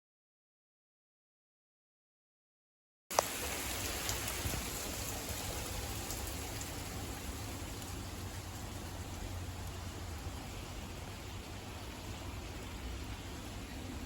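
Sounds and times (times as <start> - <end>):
raindrop ticks: 3.1 - 9.9
heavy rain falling: 3.1 - 14.0.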